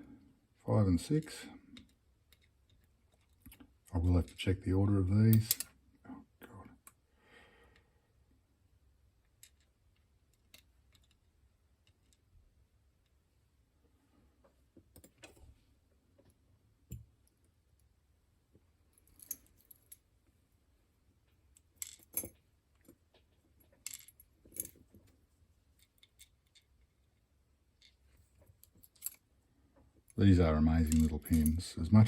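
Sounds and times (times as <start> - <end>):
small metal parts clicking: 1.8 - 3.7, 5.3 - 5.7, 9.3 - 12.2, 21.5 - 22.3, 23.6 - 24.8, 25.8 - 27.1, 27.8 - 29.2, 30.2 - 31.6.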